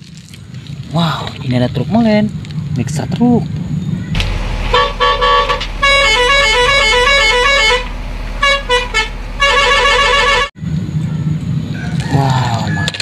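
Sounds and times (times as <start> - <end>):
low steady hum: 4.1 - 10.5
multi-tone musical horn: 4.2 - 10.5.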